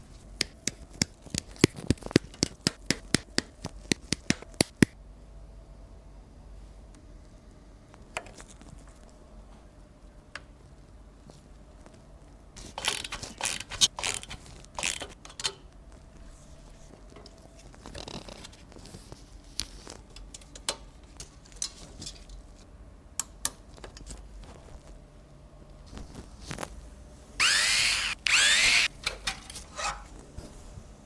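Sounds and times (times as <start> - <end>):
hands handling computer parts: 0.4 - 4.9
packaging rustling: 0.6 - 4.8.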